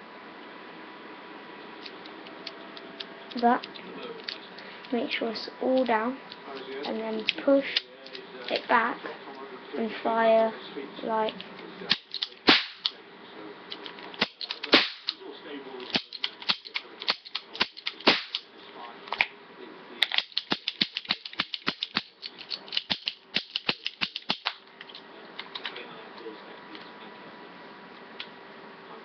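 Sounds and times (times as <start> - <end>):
toy cap gun pops: 11.9 - 12.9, 14.2 - 15.1, 15.9 - 18.4.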